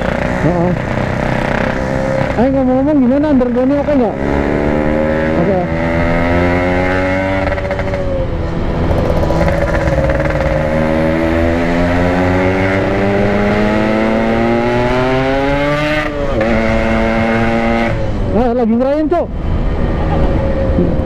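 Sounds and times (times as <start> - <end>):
motorcycle engine running: 0.0 - 15.8.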